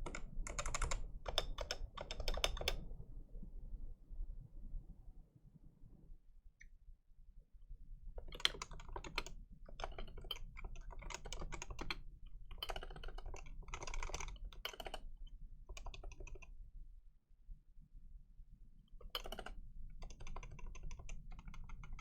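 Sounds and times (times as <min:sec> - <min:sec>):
keyboard keys clicking: 0:08.4 - 0:15.0, 0:19.2 - 0:22.0.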